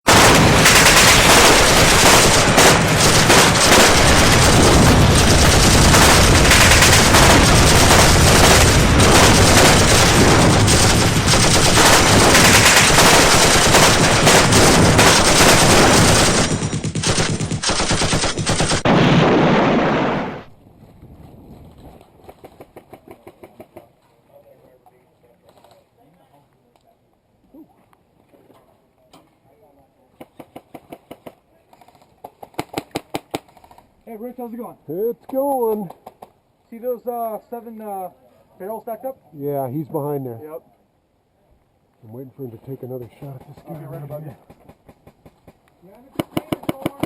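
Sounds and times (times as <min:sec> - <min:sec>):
automatic gunfire: 0:00.1 - 0:20.5.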